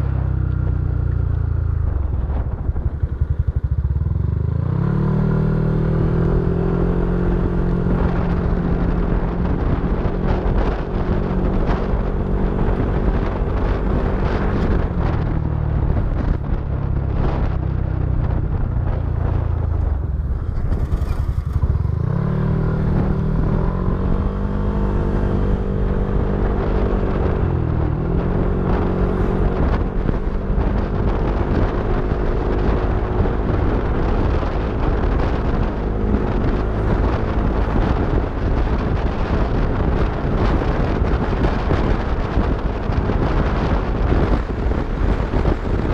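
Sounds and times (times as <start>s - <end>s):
scooter engine loud exhaust: 19.4s - 45.9s.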